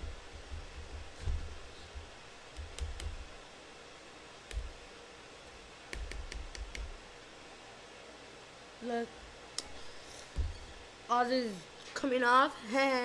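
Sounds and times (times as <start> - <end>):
low bumps of handling: 0.0 - 3.2.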